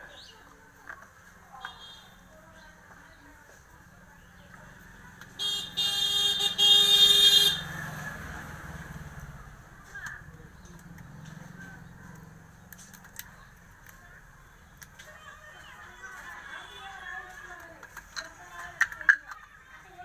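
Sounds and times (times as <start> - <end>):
vehicle horn honking: 5.4 - 7.8.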